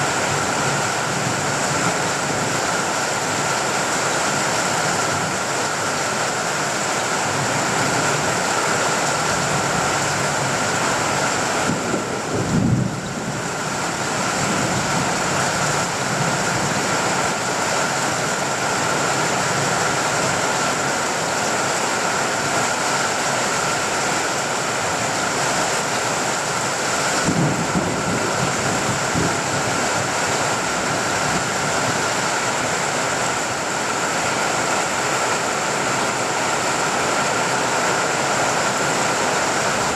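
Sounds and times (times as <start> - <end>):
rain on a tin roof: 0.0 - 39.9
distant thunder rumbling: 27.2 - 29.9.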